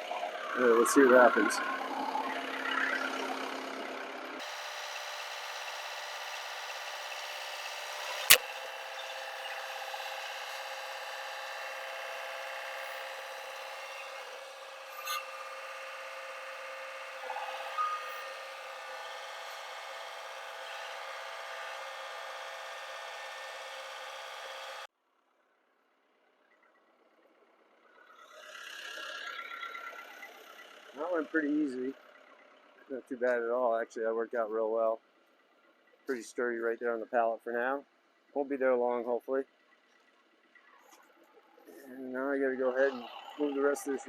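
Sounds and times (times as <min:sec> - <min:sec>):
tractor diesel engine running: 0:04.4 - 0:24.9.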